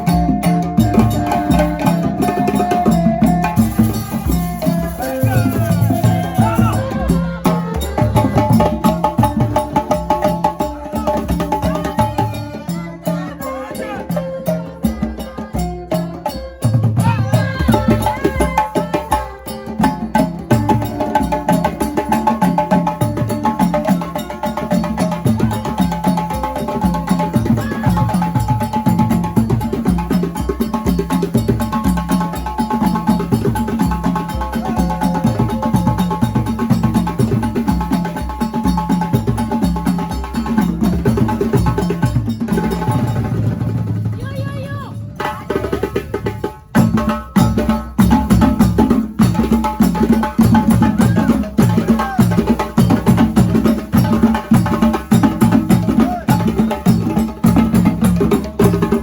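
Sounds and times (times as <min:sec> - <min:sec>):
drums beating fast rhythm: 0:00.0 - 0:59.0.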